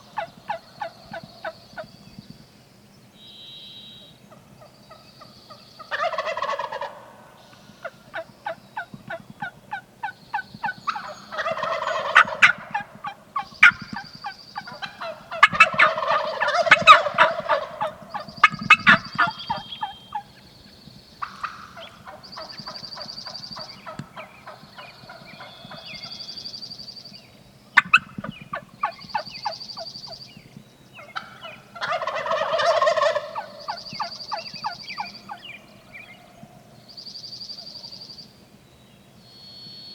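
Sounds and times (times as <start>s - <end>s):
turkeys gobbling: 0.0s - 1.9s, 4.3s - 26.4s, 27.8s - 29.9s, 31.0s - 36.8s
high whistle: 3.2s - 4.1s
turkey yelps: 5.8s - 7.1s, 7.8s - 20.4s, 21.2s - 26.1s, 27.8s - 29.6s, 31.0s - 36.6s.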